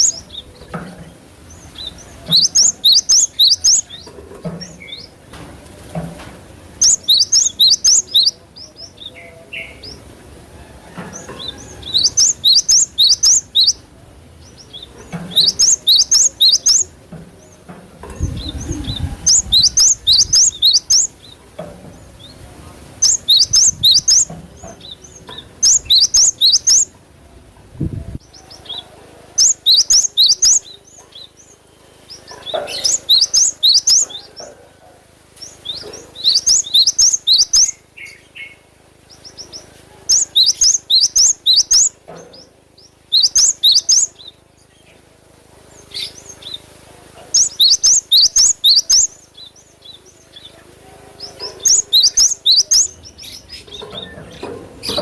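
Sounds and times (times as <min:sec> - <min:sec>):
bird singing high sharp notes: 0:01.8 - 0:04.0, 0:06.8 - 0:08.4, 0:11.9 - 0:13.8, 0:15.3 - 0:16.9, 0:18.4 - 0:21.2, 0:23.0 - 0:24.3, 0:25.5 - 0:26.9, 0:29.4 - 0:30.7, 0:32.8 - 0:34.0, 0:36.2 - 0:38.6, 0:40.1 - 0:42.0, 0:43.1 - 0:44.1, 0:47.4 - 0:49.2, 0:51.6 - 0:53.0.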